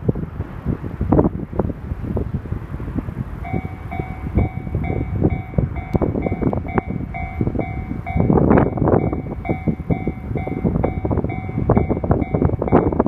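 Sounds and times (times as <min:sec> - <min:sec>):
wind buffeting microphone: 0:00.0 - 0:13.0
level crossing electronic bell: 0:03.5 - 0:13.0.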